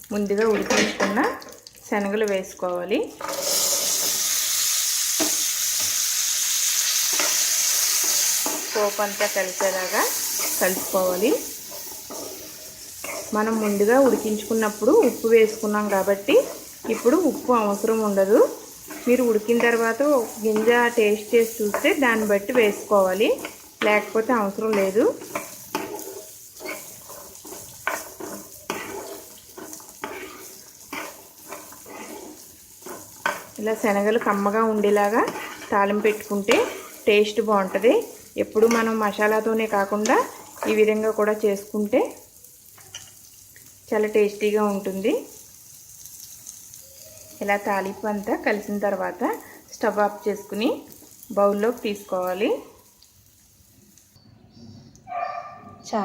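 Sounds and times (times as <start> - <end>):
chickpeas sizzling in hot oil: 0.0 - 54.2
spoon scraping a pan: 3.2 - 41.3, 42.7 - 43.2.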